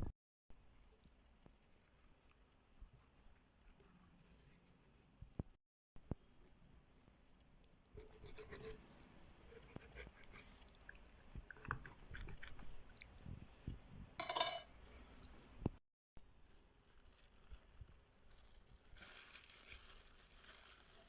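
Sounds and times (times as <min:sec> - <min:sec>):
crinkling rustle: 0:16.2 - 0:21.0.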